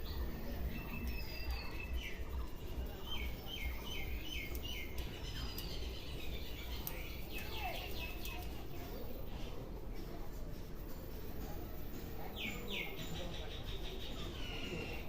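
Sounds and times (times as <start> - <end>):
birds chirping: 0.0 - 9.2, 12.2 - 15.0.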